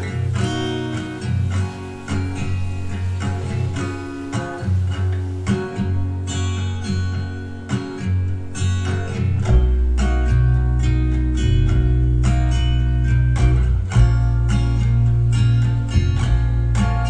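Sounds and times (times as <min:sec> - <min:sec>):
acoustic guitar music: 0:00.0 - 0:17.0
deep bass line: 0:04.7 - 0:17.0.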